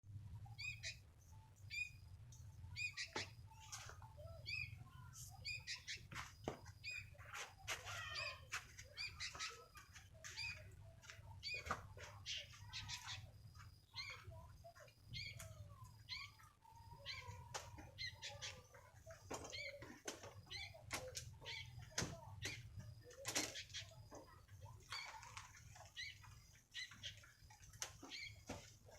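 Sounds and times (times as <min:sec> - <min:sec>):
bird chirping calls: 0:00.3 - 0:28.9
bulbul chirping: 0:01.6 - 0:06.1.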